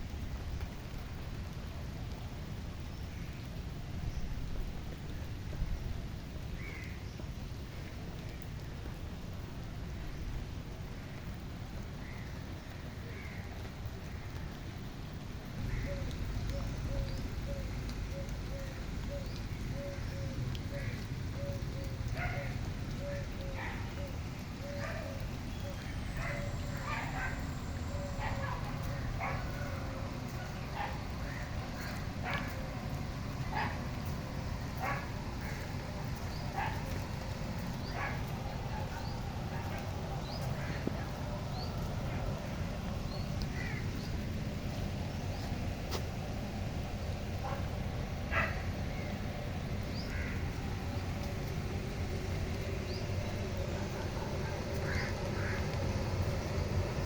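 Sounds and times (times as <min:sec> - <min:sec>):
bird calls: 0:15.7 - 0:32.9, 0:34.8 - 0:42.4, 0:52.2 - 0:57.0
steady low rumble: 0:20.3 - 0:57.0
dog barking: 0:26.2 - 0:27.4, 0:28.2 - 0:29.8, 0:30.4 - 0:31.0, 0:34.8 - 0:35.1, 0:36.6 - 0:36.9, 0:37.9 - 0:39.0, 0:48.3 - 0:48.6.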